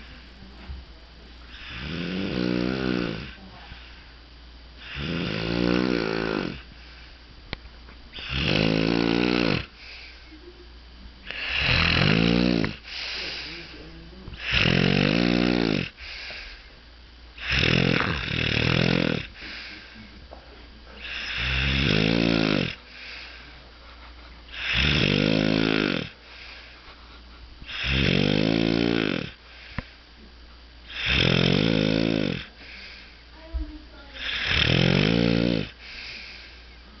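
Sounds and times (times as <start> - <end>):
quiet breathing: 0.0 - 2.1, 3.2 - 5.2, 5.9 - 7.5, 9.6 - 14.7, 15.3 - 16.8, 17.4 - 21.7, 22.6 - 25.1, 25.9 - 28.0, 28.6 - 31.3, 32.3 - 34.6, 35.4 - 37.0
loud rasping snoring: 1.5 - 3.4, 4.8 - 6.6, 8.2 - 9.7, 11.3 - 12.8, 14.4 - 16.0, 17.4 - 19.4, 21.0 - 22.8, 24.5 - 26.2, 27.7 - 29.4, 30.9 - 32.5, 34.2 - 35.8.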